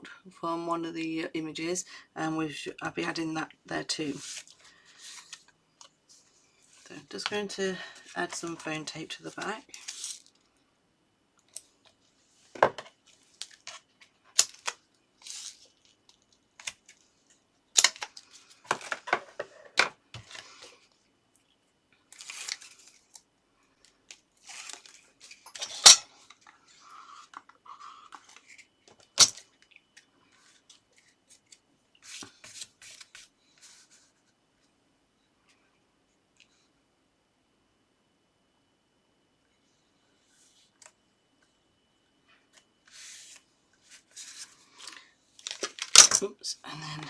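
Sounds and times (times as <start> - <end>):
paper and card rustling: 4.1 - 5.5, 9.3 - 10.3, 30.4 - 34.1.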